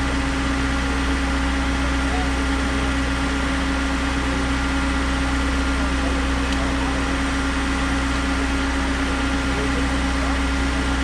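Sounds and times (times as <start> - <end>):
truck engine running steadily: 0.0 - 11.0.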